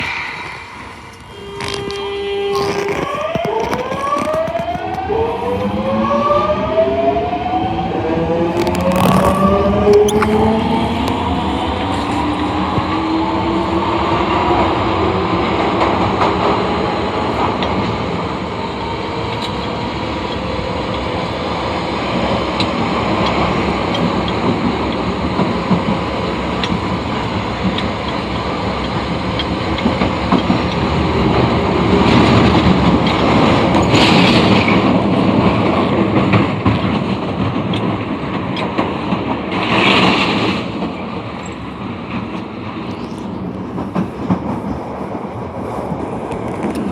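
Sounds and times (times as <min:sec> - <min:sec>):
burst of high-pitched noise: 0:00.0 - 0:03.6
subway car running on rails: 0:00.0 - 0:46.9.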